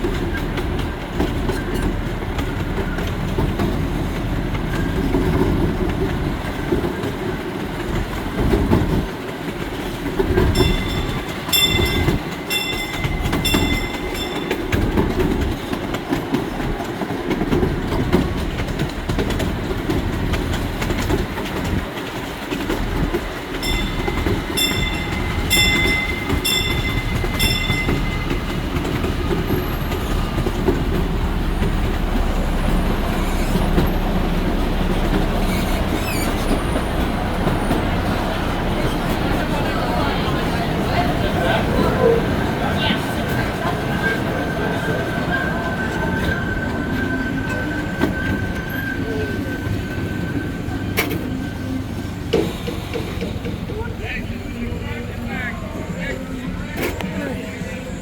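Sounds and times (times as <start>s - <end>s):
train wheels clacking on rails: 0.0s - 58.0s
bell ringing: 10.5s - 15.5s, 23.6s - 29.0s.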